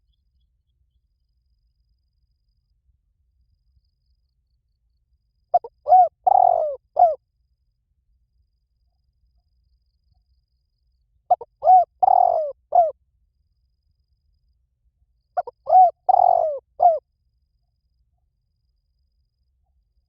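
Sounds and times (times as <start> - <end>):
dove cooing: 5.6 - 7.2, 11.3 - 12.9, 15.4 - 17.0.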